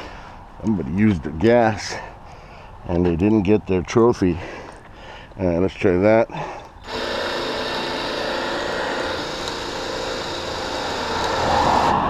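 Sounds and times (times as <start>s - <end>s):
electric winch running: 6.8s - 12.0s.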